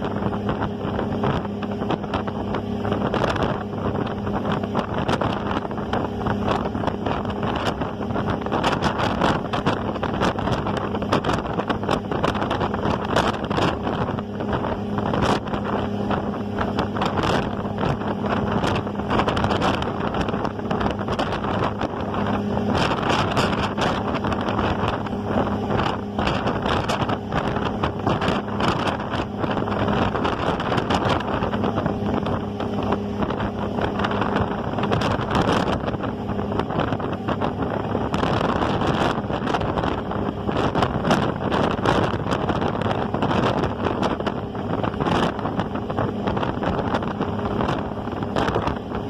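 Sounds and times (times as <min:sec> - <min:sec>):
ferry engine droning: 0:00.0 - 0:49.0
wind buffeting microphone: 0:00.0 - 0:49.0.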